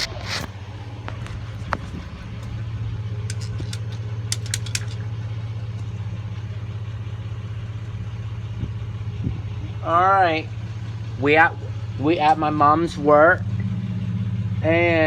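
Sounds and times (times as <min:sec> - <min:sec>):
car engine idling: 0:00.0 - 0:15.0
light clicks and rattles: 0:03.2 - 0:05.9.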